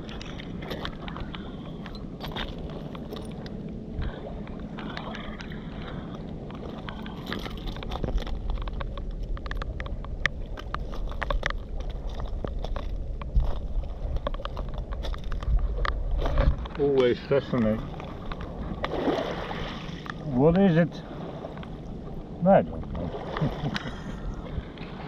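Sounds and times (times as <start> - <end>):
crunching gravel and stones: 0.0 - 3.6, 4.8 - 20.2
wind noise on microphone: 6.6 - 17.0.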